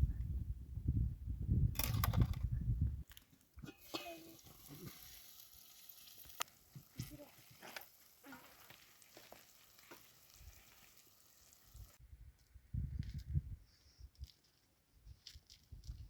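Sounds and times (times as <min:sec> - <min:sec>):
food sizzling in frying: 0:03.8 - 0:12.0.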